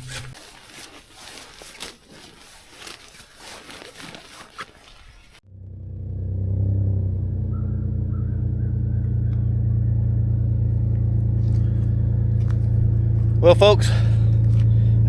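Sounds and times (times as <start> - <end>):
car engine rumbling: 0.0 - 0.4, 5.4 - 15.0.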